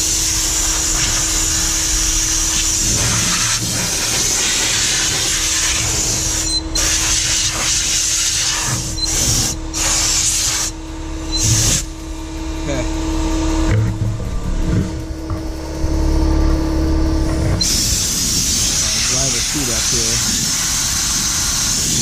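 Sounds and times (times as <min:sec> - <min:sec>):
air blow gun hissing: 0:17.6 - 0:22.0.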